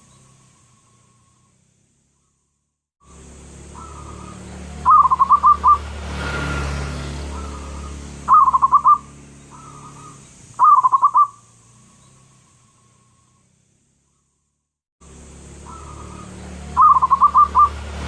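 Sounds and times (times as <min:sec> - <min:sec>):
dove cooing: 0:03.7 - 0:05.8, 0:07.3 - 0:11.4, 0:15.6 - 0:17.8.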